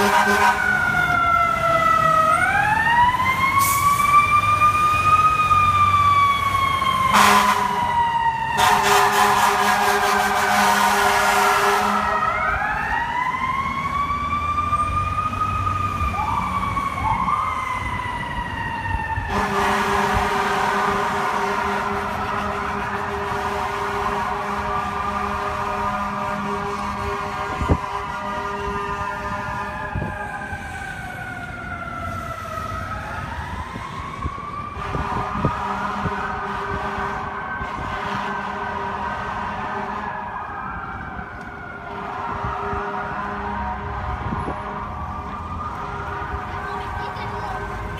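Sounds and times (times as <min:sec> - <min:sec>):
air horn blast: 0:00.0 - 0:00.7, 0:07.1 - 0:07.8, 0:08.6 - 0:12.2, 0:19.3 - 0:29.7, 0:34.8 - 0:40.0, 0:41.9 - 0:43.8
rising siren whoops: 0:00.0 - 0:47.9
siren winding up and falling: 0:12.0 - 0:19.3.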